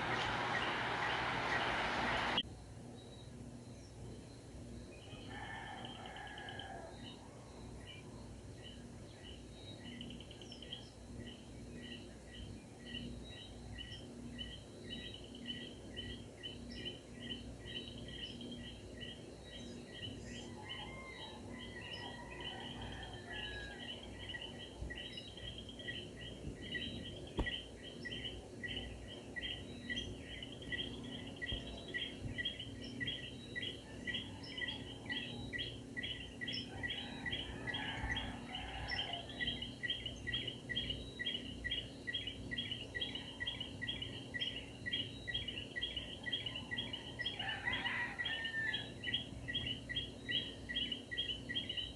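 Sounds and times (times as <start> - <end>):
steady hiss: 0.0 - 2.4.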